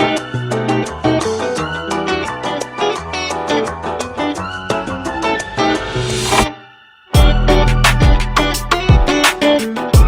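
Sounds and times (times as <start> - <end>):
upbeat latin-flavoured music: 0.0 - 10.0.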